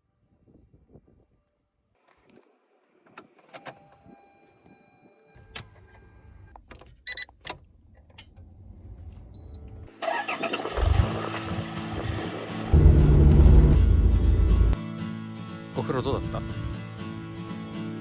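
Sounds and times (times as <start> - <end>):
diesel engine starting: 9.9 - 14.8.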